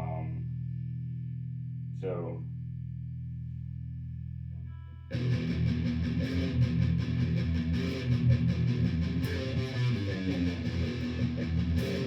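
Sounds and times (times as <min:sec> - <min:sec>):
electric guitar through amplifier: 0:04.7 - 0:12.0.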